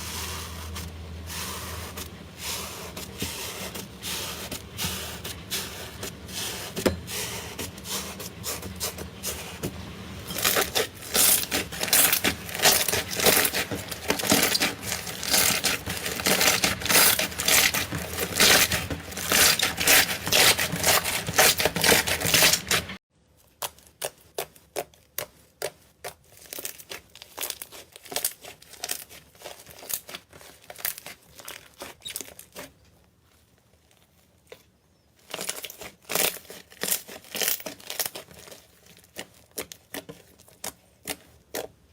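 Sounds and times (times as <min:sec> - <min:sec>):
slime squished crackling and popping: 0:10.3 - 0:32.6, 0:35.2 - 0:41.7.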